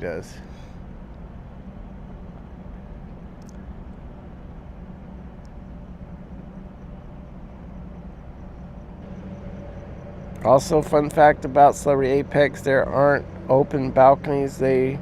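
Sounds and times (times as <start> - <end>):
ship engines humming: 0.0 - 15.0
faint ticks: 3.4 - 4.0.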